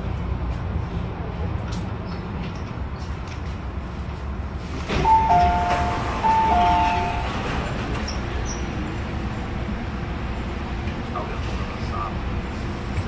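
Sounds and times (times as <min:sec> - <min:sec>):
train running rumble: 0:00.0 - 0:13.0
two-tone chime: 0:05.1 - 0:07.2.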